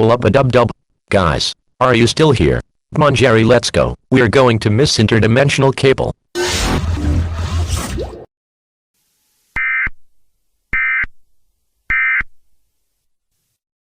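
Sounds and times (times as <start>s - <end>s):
loud noise burst with hum: 6.4s - 8.2s.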